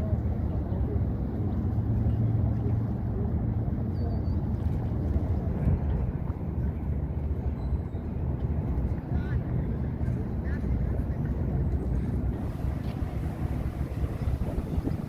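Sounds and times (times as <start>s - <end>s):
engine rumbling: 9.6s - 15.0s.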